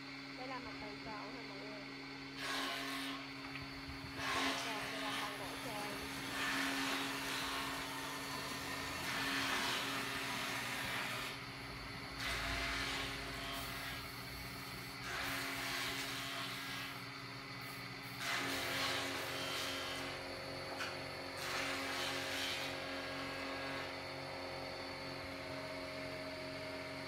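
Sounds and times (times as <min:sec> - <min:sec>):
electric sander on wood: 0:02.4 - 0:11.5.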